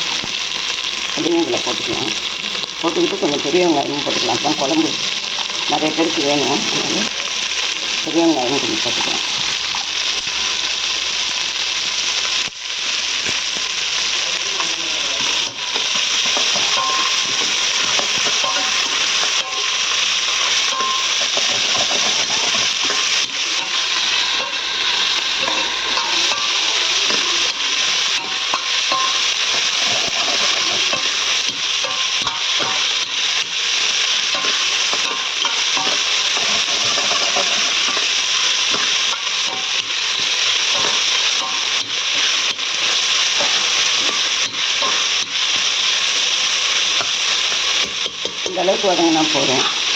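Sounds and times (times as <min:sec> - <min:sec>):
onions sizzling in hot oil: 0:00.0 - 0:49.9
spoon clicking on pan: 0:25.4 - 0:45.4.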